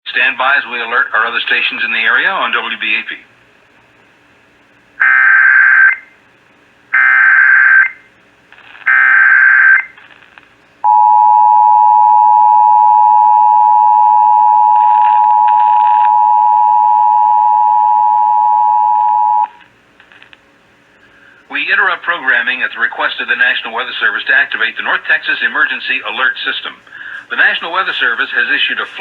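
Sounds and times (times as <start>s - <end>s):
two-tone attention signal: 10.9s - 19.6s.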